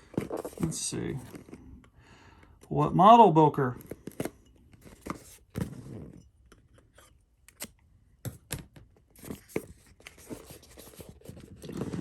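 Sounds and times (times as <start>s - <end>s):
packaging rustling: 0.0s - 1.7s, 9.2s - 12.0s.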